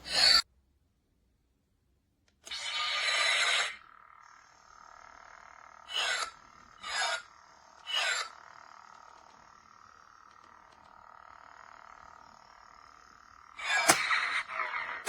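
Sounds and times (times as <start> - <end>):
toy lightsaber electronic hum: 0.0 - 0.4, 2.4 - 15.0
lightsaber swing swooshes: 13.6 - 15.0.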